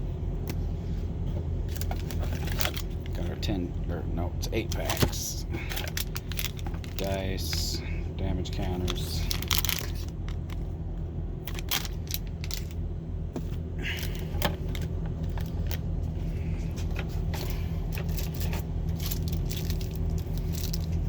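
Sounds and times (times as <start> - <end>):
truck engine rumbling: 0.0 - 21.0
dice and counters rattling: 8.8 - 10.6, 11.5 - 12.8, 17.4 - 21.0.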